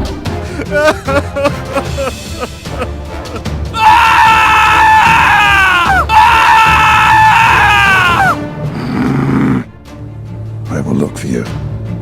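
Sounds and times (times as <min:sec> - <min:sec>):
high-pitched screams: 0:03.8 - 0:08.4.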